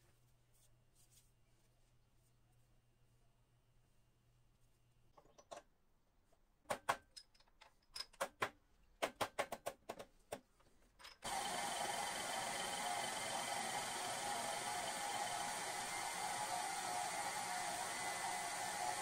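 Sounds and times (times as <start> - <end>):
metal parts knocking and clicking: 6.8 - 10.0.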